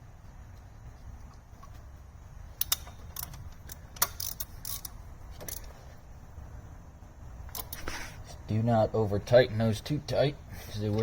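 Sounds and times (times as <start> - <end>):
low steady hum: 0.0 - 11.0
ratchet wrench clicking: 2.6 - 5.7, 7.5 - 7.9.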